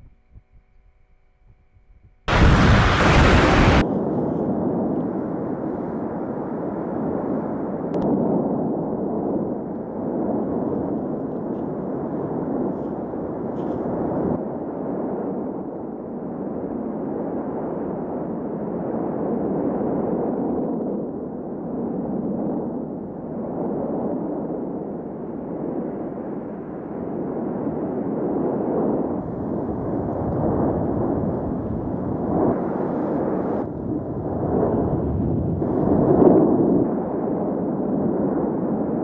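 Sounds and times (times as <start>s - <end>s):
volcanic eruption rushing noise: 2.3s - 14.4s, 29.1s - 39.0s.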